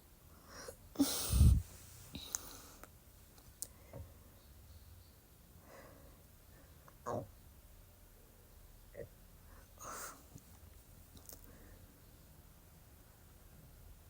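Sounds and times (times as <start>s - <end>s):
faint breathing: 0.4s - 2.9s.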